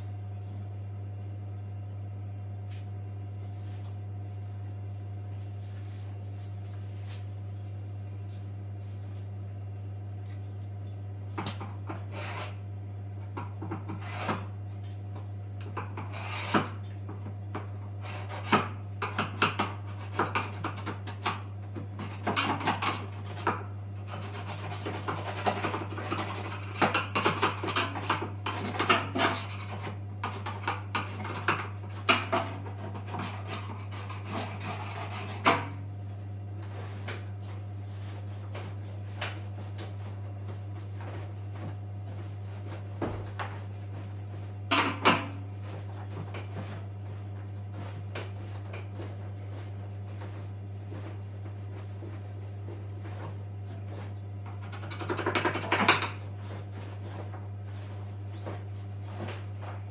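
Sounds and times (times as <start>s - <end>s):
steady low hum: 0.0s - 59.9s
tools knocking and scraping: 41.0s - 51.2s, 53.0s - 59.9s.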